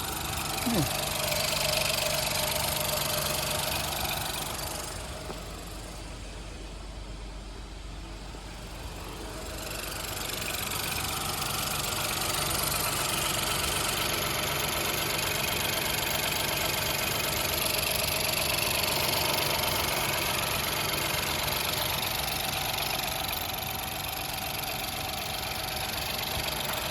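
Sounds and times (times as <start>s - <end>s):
car engine knocking: 0.0s - 26.9s.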